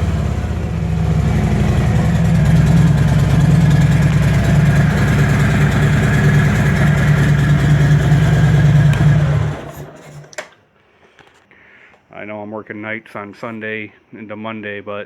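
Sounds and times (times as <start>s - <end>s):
motorcycle engine idling: 0.0s - 10.0s.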